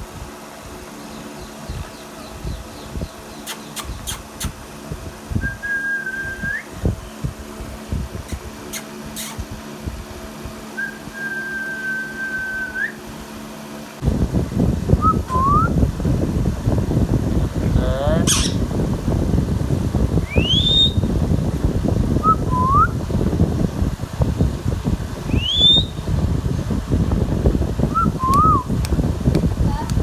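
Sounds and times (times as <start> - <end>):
parrot whistling: 10.8 - 13.0, 18.3 - 18.6, 20.2 - 21.0, 25.3 - 26.0, 28.0 - 28.7
parrot squawk: 18.2 - 18.6.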